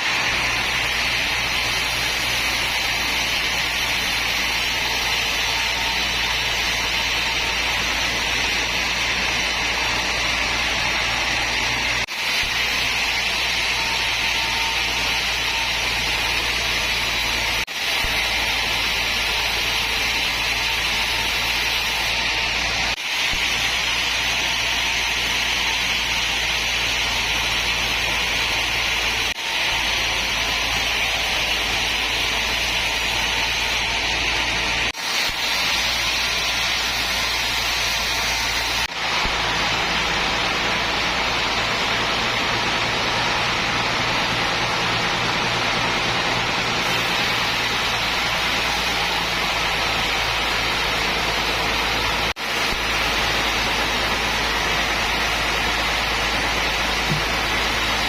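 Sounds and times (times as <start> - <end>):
sawmill machinery hiss: 0.0 - 58.0
low motor hum: 39.0 - 58.0.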